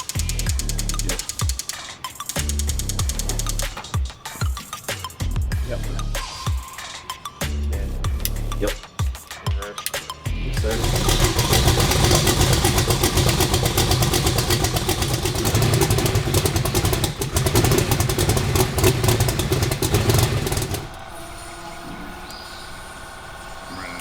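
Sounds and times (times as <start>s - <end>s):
car engine running unevenly: 10.6s - 21.1s.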